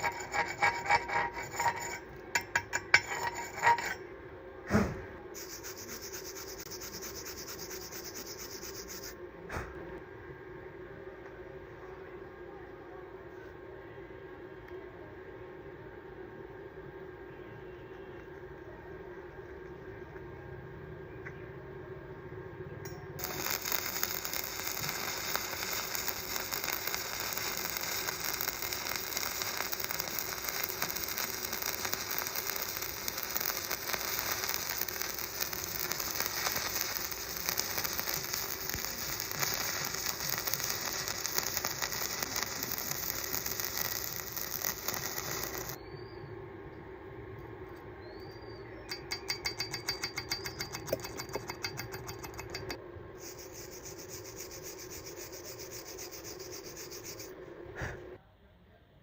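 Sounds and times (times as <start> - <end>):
welding arc crackling: 0.0 - 4.0, 5.4 - 9.2, 23.2 - 45.8, 49.1 - 57.3
steady hum: 0.0 - 12.5, 21.7 - 48.0, 48.7 - 58.2.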